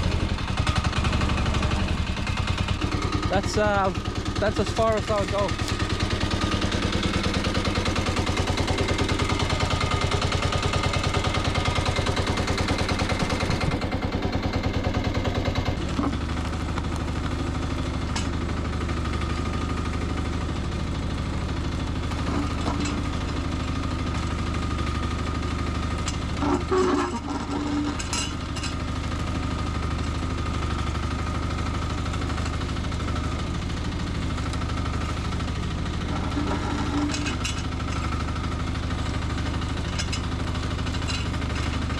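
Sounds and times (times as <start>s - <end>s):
mini excavator engine running: 0.0s - 41.9s
metallic clatter: 26.0s - 28.8s, 36.1s - 38.1s, 39.8s - 41.9s.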